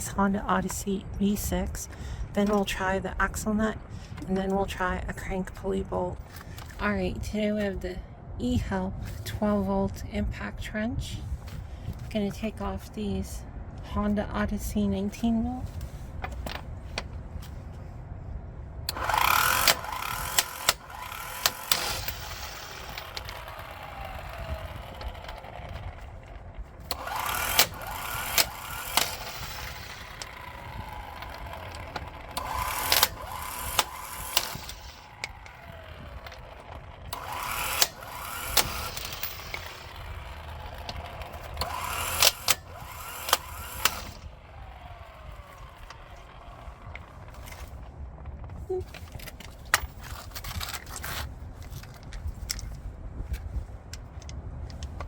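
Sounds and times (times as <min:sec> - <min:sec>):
impact wrench hammering: 0:18.9 - 0:26.1, 0:26.9 - 0:44.3
sharp clicks: 0:18.9 - 0:48.4.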